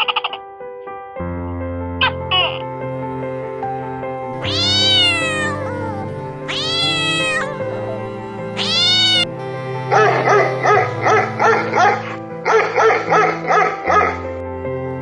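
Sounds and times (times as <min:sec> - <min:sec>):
background music: 0:00.0 - 0:15.0
cat meowing: 0:04.2 - 0:12.2.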